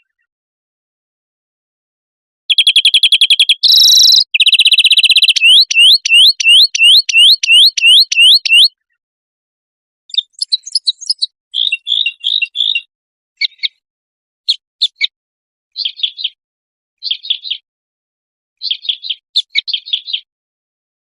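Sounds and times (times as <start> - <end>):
rising whistled bird notes: 2.5 - 8.7, 10.2 - 12.9
songbirds trilling: 2.5 - 8.7, 10.1 - 13.7
bird chirps: 2.5 - 9.0, 10.1 - 13.8, 14.5 - 15.1, 15.7 - 16.4, 17.0 - 17.6, 18.6 - 20.3
bird harsh burst: 3.6 - 5.5.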